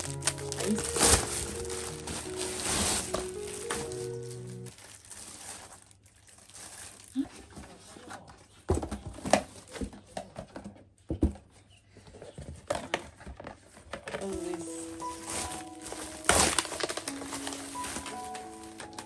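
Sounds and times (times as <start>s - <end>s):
items knocking: 0.0s - 4.7s, 12.4s - 19.0s
plastic packaging crinkling: 0.0s - 7.9s, 13.3s - 19.0s.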